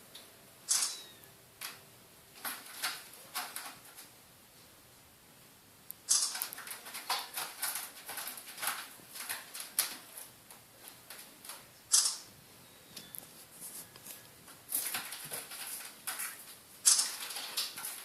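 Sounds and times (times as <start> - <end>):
kitten scratching and rustling: 0.7 - 1.8, 2.4 - 4.2, 6.1 - 12.3, 13.0 - 18.0.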